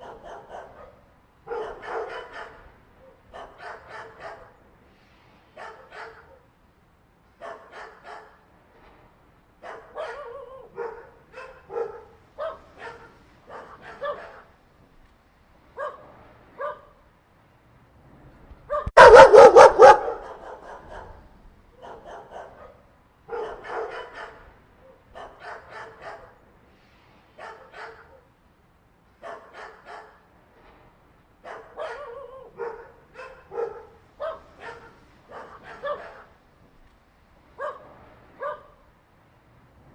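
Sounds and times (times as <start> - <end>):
dogs fighting barking and yelping: 0.0 - 4.6, 9.6 - 14.6, 18.7 - 21.2, 21.8 - 26.4, 29.2 - 30.3, 31.4 - 36.4.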